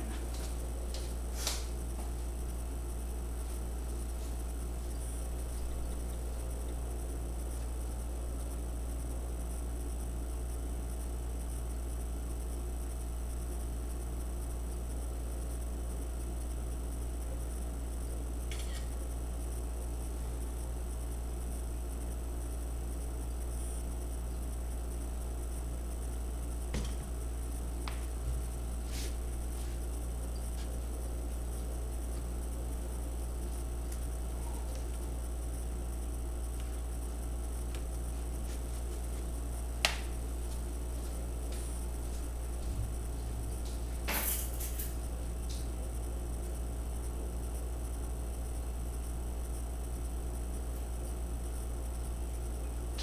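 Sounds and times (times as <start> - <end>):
faint clicks and taps: 27.8 - 28.1, 37.7 - 38.0, 39.0 - 40.6.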